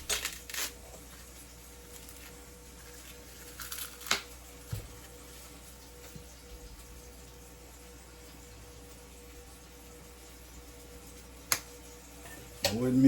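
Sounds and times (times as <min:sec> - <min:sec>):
corn husk rustling: 0:00.0 - 0:05.7
faint steady hum: 0:00.0 - 0:13.0.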